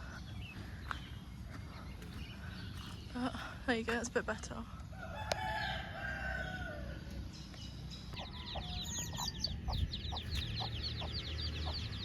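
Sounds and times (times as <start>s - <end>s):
rooster crowing: 5.0s - 7.0s, 8.2s - 9.7s
chickens clucking: 8.1s - 12.0s.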